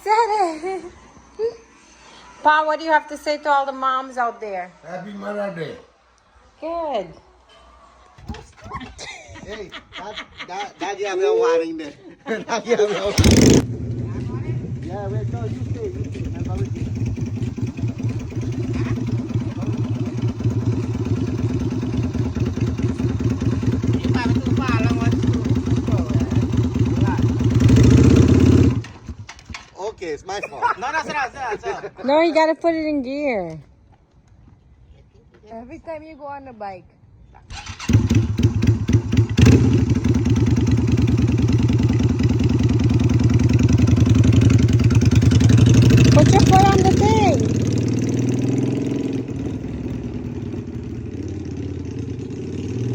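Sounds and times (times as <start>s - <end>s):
motorbike engine idling: 13.1s - 29.7s, 37.5s - 52.4s.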